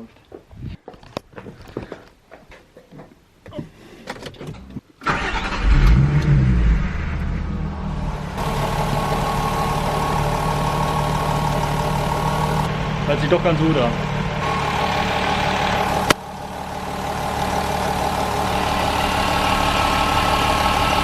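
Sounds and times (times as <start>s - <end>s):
car engine starting and idling: 4.2s - 21.0s.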